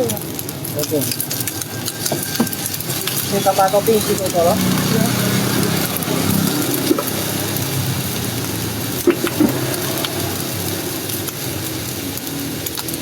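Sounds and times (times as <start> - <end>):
low engine-like hum: 3.1 - 12.7.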